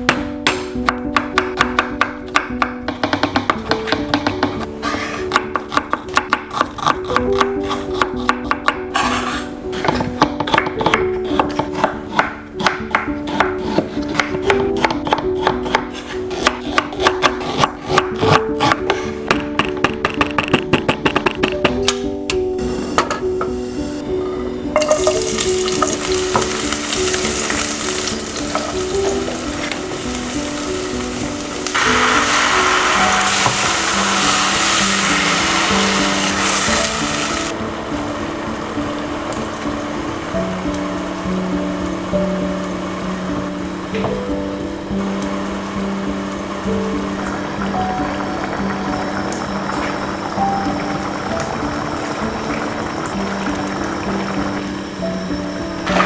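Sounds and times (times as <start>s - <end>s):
knife chopping on cutting board: 0.1s - 21.8s
acoustic guitar music: 17.8s - 56.0s
beef sizzling in a pan: 24.8s - 37.6s.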